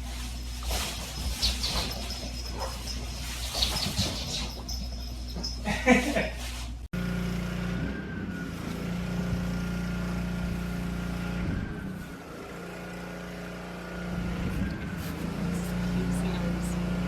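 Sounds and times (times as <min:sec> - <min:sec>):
thin wavering whine: 0:00.0 - 0:06.3
motor hum: 0:07.0 - 0:17.0.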